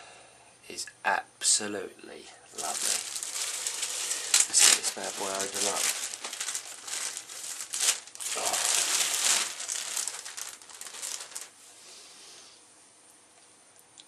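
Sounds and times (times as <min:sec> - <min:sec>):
packaging crinkling: 0:02.5 - 0:11.6.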